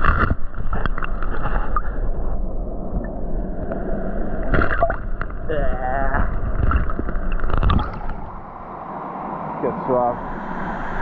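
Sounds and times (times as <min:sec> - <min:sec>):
stream water rushing: 0:03.7 - 0:11.0
wind on microphone: 0:04.8 - 0:11.0.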